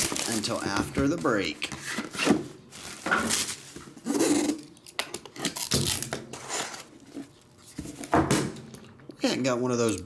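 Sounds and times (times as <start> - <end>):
plastic wrap tearing and rustling: 0.0 - 1.4, 2.3 - 4.6.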